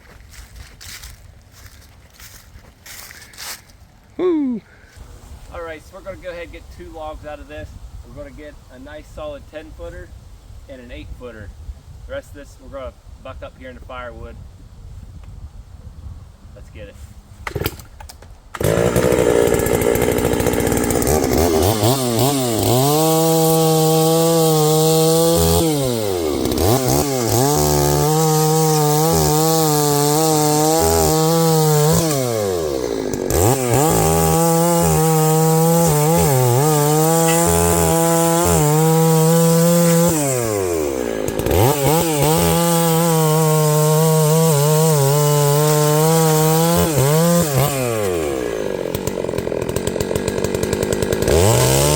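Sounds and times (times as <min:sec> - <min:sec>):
chainsaw cutting log: 0:17.4 - 0:51.9.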